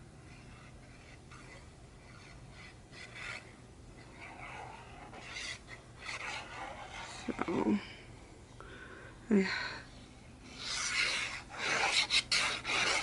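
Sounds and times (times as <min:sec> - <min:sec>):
thick paper sheets rasping: 0:10.5 - 0:13.0.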